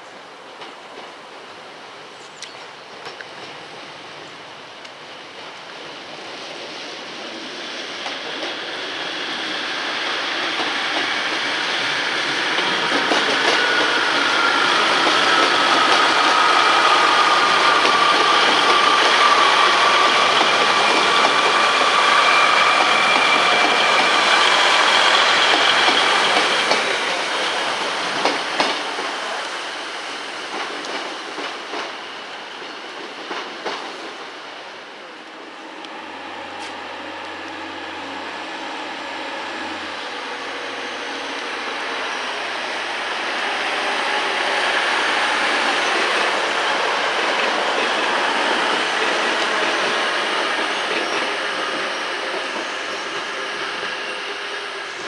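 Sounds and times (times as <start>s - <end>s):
train passing: 0.0s - 55.0s
high steady tones: 35.2s - 47.2s.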